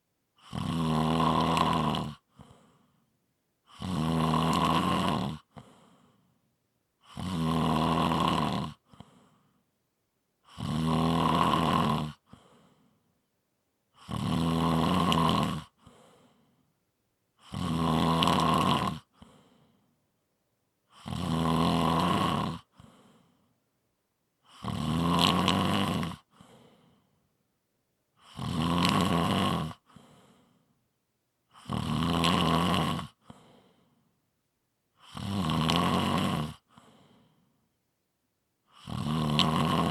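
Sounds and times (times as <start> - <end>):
snoring: 0.4 - 3.0, 3.6 - 6.3, 7.0 - 9.6, 10.4 - 13.0, 13.9 - 16.6, 17.4 - 19.8, 20.8 - 23.5, 24.4 - 27.1, 28.1 - 30.6, 31.5 - 34.0, 34.9 - 37.5, 38.6 - 39.9.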